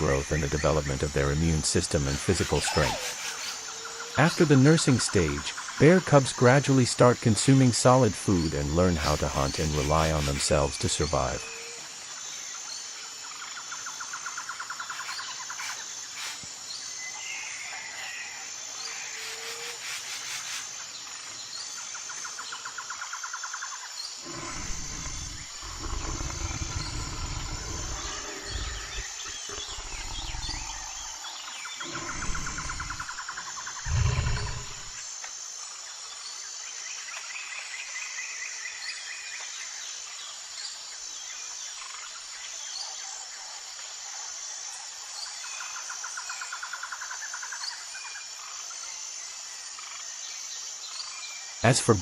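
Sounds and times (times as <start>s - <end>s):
birds chirping: 0.0s - 17.6s, 23.5s - 35.0s
insects buzzing and trilling: 0.0s - 52.0s
low animal growls: 24.2s - 35.0s.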